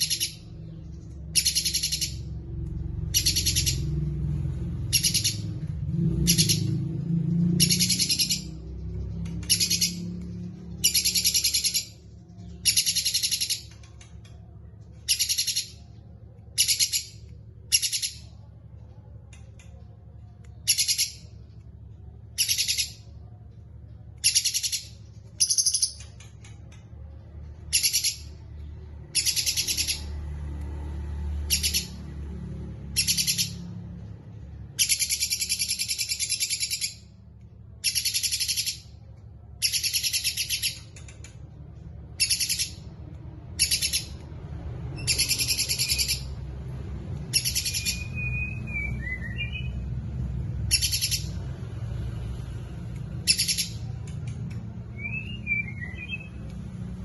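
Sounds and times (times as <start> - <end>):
songbird trilling: 1.4 - 2.2, 3.1 - 4.0, 4.9 - 5.6, 9.2 - 10.1, 10.7 - 13.7, 24.2 - 26.1, 29.1 - 30.1, 42.2 - 42.9, 43.6 - 44.2, 45.0 - 46.4, 47.3 - 49.8, 50.7 - 51.4, 53.2 - 53.9.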